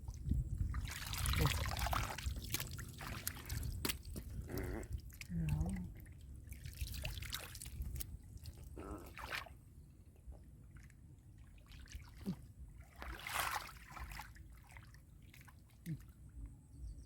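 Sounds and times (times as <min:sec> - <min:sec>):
muddy water sloshing: 0:00.0 - 0:16.3
water splash: 0:00.7 - 0:04.1, 0:11.8 - 0:14.8.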